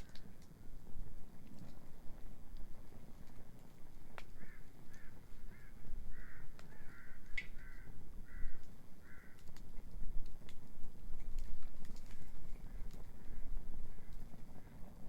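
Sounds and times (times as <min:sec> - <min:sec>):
wood fire crackling: 0:00.0 - 0:15.0
bird calling: 0:04.3 - 0:09.5, 0:12.2 - 0:15.0.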